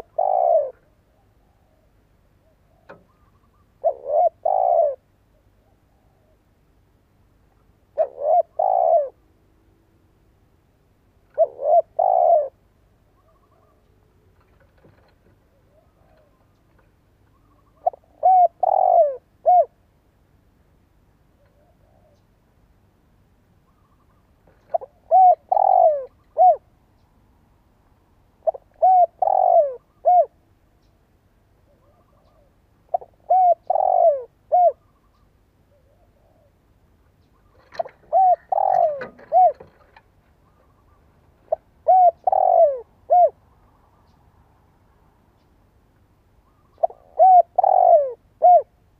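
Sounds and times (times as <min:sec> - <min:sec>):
dove cooing: 0:00.0 - 0:06.5, 0:07.8 - 0:09.8, 0:11.3 - 0:19.8, 0:21.4 - 0:22.3, 0:23.7 - 0:26.8, 0:28.3 - 0:30.4, 0:31.6 - 0:44.2, 0:46.4 - 0:48.8.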